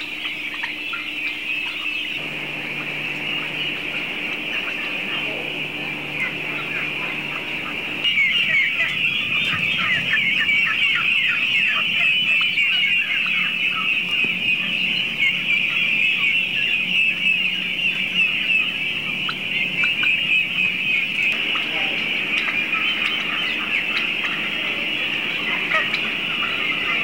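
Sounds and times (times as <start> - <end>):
turkeys chirping: 0.0 - 27.0.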